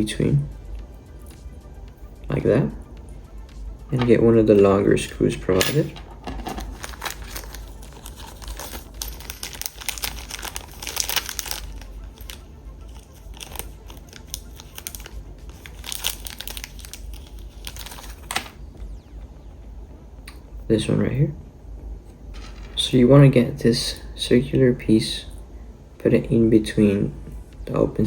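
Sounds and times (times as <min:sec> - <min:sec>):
plastic bag crinkling: 0:06.2 - 0:18.6.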